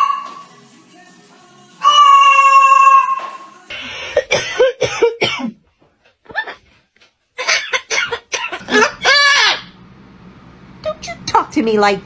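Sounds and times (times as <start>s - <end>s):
parrot making cough-like sounds: 7.4s - 9.6s.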